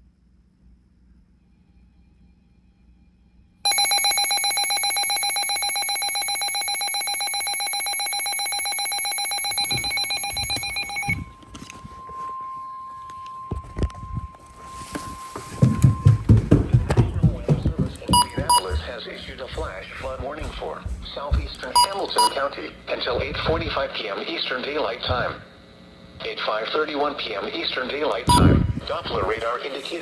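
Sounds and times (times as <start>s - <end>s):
fast-pulsing bell-like alarm: 3.7s - 19.0s
steady alarm tone: 3.7s - 24.0s, 27.2s - 29.6s
footsteps thumping up stairs: 9.5s - 11.2s, 15.0s - 22.2s.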